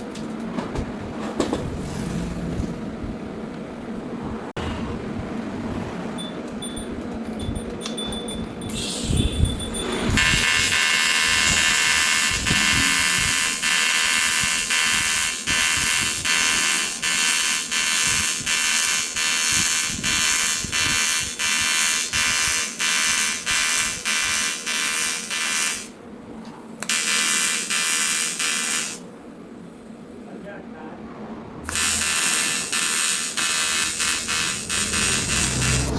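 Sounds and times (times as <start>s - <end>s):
welding arc buzzing: 10.1s - 26.0s, 26.8s - 29.1s, 31.6s - 35.9s.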